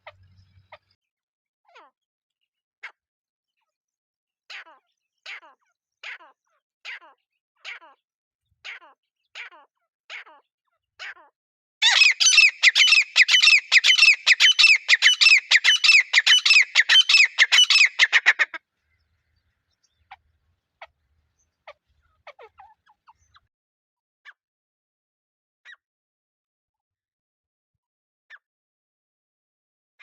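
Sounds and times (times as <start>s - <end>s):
francolin calling: 11.8s - 18.5s.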